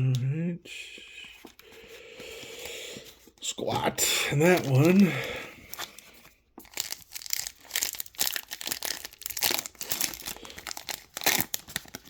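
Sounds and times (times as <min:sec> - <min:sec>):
plastic wrapper crinkling: 0:04.4 - 0:12.0.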